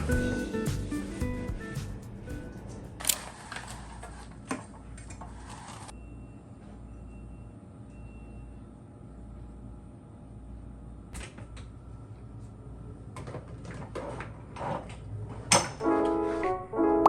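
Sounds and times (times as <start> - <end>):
background music: 0.0 - 3.1, 15.8 - 17.0.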